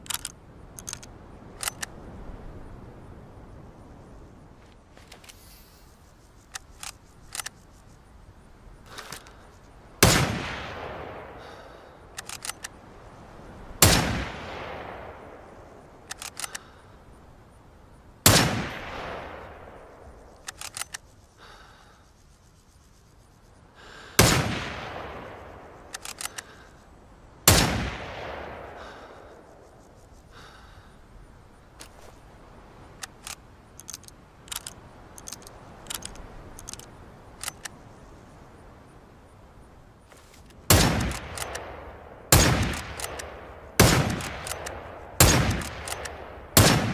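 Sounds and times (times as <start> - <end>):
rifle bolt metallic clicks: 0.0 - 2.0, 6.5 - 7.6, 12.1 - 12.8, 16.0 - 16.7, 20.4 - 21.1, 25.8 - 26.5, 32.9 - 37.8, 40.3 - 41.7, 42.3 - 46.8
rifle shots echoing: 10.0 - 11.6, 13.8 - 15.5, 18.2 - 19.9, 24.2 - 26.3, 27.5 - 29.2, 40.7 - 46.9.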